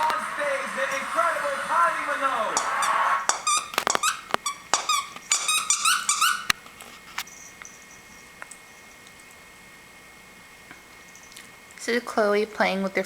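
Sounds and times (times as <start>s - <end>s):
sharp clicks: 2.5s - 7.3s
squeaky dog toy squeaking: 3.3s - 6.6s.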